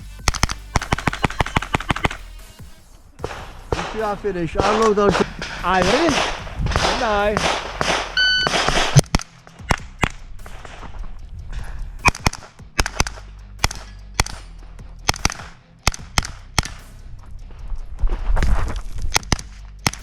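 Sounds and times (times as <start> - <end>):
carbine gunshots: 0.2 - 2.3, 3.2 - 11.0, 12.0 - 16.9
shot timer beep: 8.2 - 8.6.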